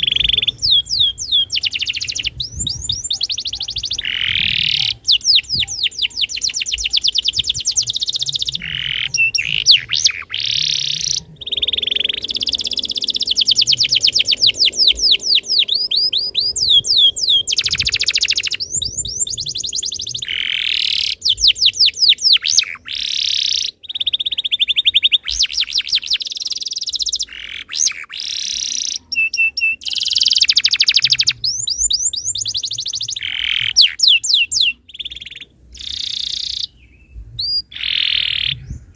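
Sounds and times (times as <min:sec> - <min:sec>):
canary singing: 0:00.0 - 0:38.9.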